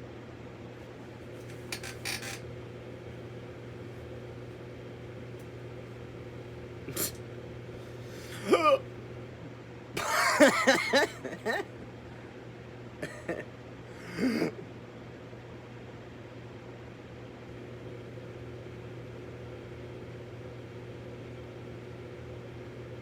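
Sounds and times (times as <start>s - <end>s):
person hiccuping: 8.3s - 8.9s, 13.0s - 14.6s.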